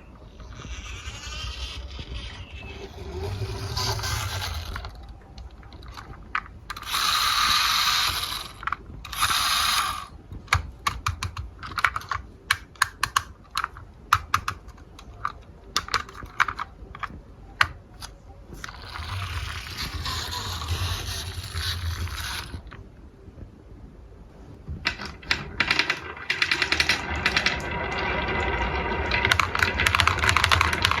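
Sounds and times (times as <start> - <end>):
marbles rolling along a track: 0.4 - 12.2, 18.6 - 22.8, 24.8 - 31.0
marbles clicking and clacking: 0.4 - 17.1, 18.0 - 22.8, 24.8 - 31.0.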